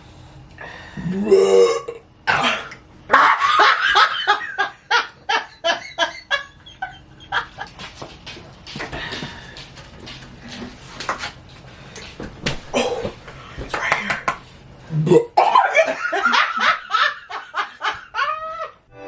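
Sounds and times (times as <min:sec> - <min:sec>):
person burping loudly: 0:01.0 - 0:03.3, 0:14.9 - 0:15.7
laughter: 0:03.1 - 0:08.0, 0:15.4 - 0:18.8.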